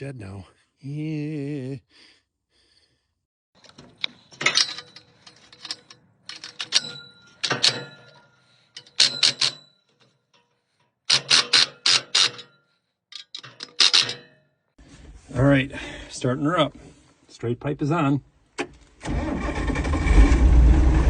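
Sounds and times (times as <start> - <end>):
sharp metallic clicks and clanks: 3.6 - 14.5.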